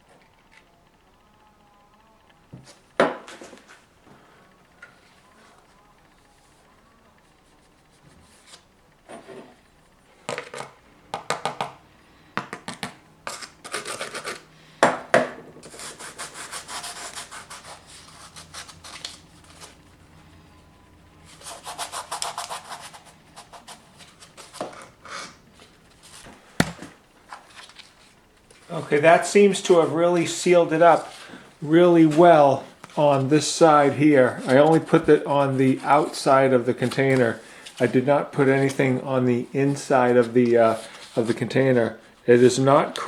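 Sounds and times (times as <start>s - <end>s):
sharp knocks: 26.6s - 26.9s.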